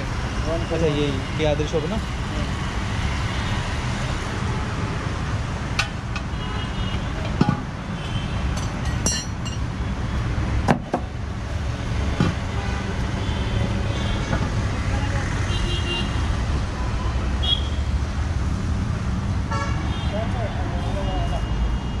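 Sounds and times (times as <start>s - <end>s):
road traffic rumble: 0.0s - 22.0s
sharp knocks and clicks: 5.7s - 6.3s.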